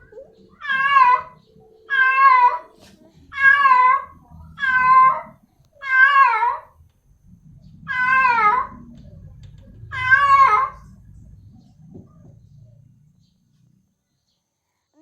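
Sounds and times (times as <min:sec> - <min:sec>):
cat meowing loudly: 0:00.6 - 0:06.7, 0:07.9 - 0:08.8, 0:09.9 - 0:10.8.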